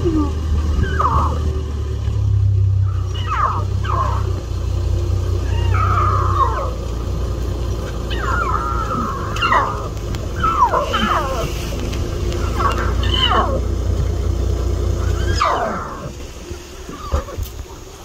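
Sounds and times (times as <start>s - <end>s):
lion cubs mewing: 0.0s - 1.7s, 2.8s - 4.5s, 5.3s - 6.9s, 7.9s - 13.8s, 14.9s - 16.2s, 16.8s - 17.6s
steady low rumble: 0.0s - 18.0s.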